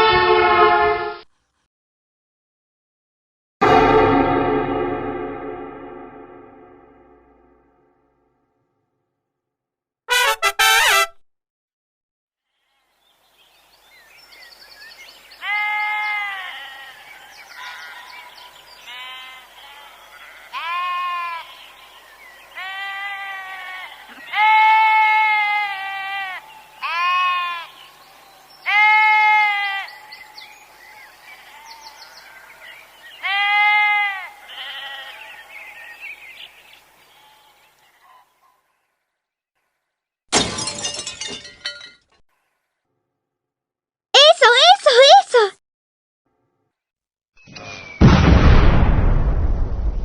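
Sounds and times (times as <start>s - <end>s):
farm animals bleating: 15.4s - 27.9s, 28.6s - 30.3s, 31.2s - 35.9s, 37.1s - 37.7s.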